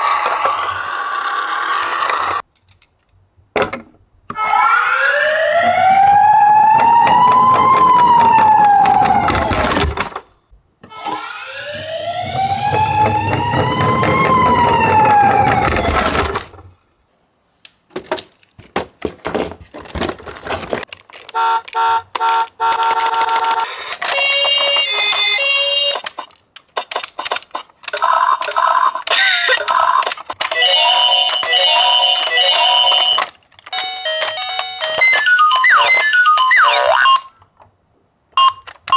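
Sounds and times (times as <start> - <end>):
electronic siren wail: 4.4 - 10.0, 10.9 - 16.4, 30.5 - 37.3
plastic clicking and rattling: 5.8 - 11.2, 17.9 - 37.7, 38.6 - 38.9
low rolling rumble: 11.6 - 16.6.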